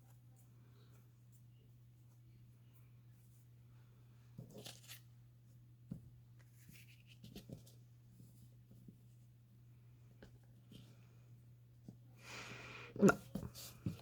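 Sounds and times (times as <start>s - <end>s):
low steady hum: 0.0s - 14.0s
paper rustling and crinkling: 4.4s - 5.1s.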